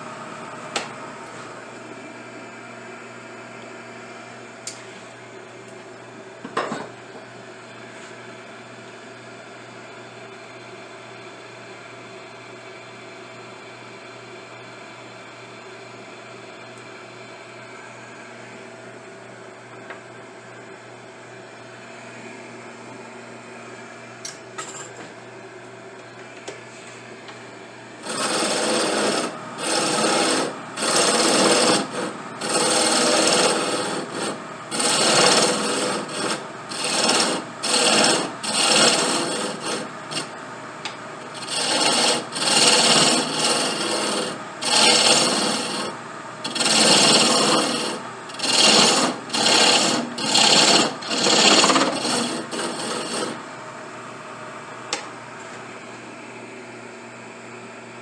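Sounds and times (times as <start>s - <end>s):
motor hum: 15.9s - 57.3s
abrasive strokes on wood: 28.0s - 40.3s, 41.3s - 53.4s.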